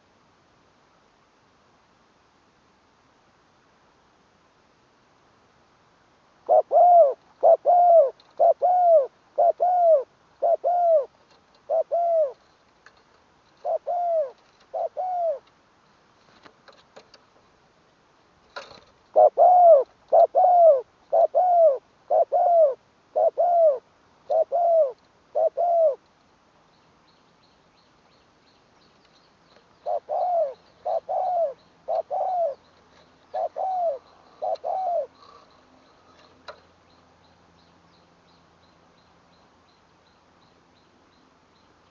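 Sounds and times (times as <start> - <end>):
dove cooing: 6.5 - 12.4, 13.6 - 15.5, 19.1 - 26.0, 29.8 - 36.4.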